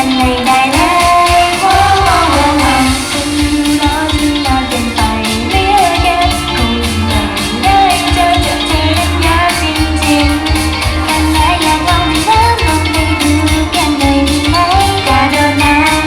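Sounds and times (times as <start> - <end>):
pop song with female singing: 0.0 - 16.0.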